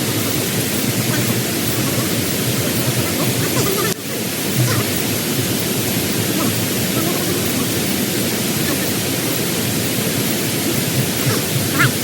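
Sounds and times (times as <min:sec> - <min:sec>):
loud rushing noise: 0:00.0 - 0:12.0.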